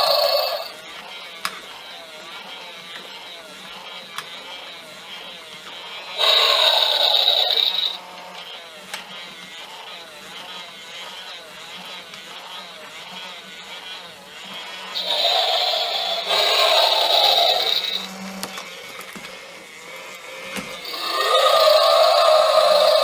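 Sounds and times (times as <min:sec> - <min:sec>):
toy dragon electronic sound effect: 0:00.0 - 0:00.8, 0:06.2 - 0:08.0, 0:15.0 - 0:18.1, 0:20.8 - 0:23.0
toy motor and gears whirring: 0:00.0 - 0:23.0.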